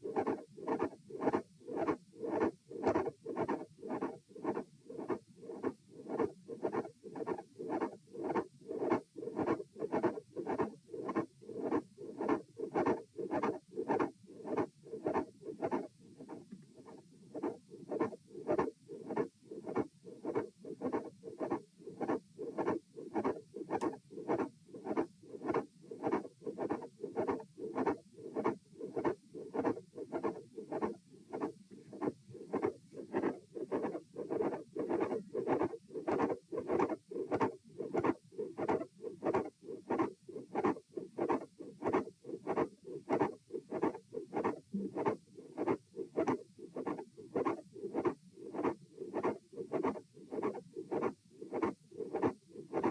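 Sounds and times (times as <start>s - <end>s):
heartbeat through stethoscope: 17.4s - 52.9s.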